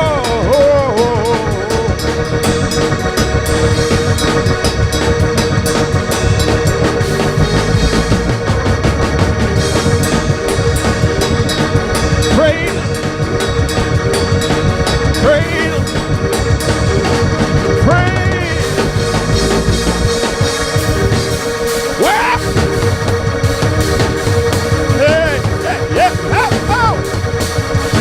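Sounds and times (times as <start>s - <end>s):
lively music with organ and drums: 0.0s - 28.0s
sliding vocal cries: 22.0s - 22.6s.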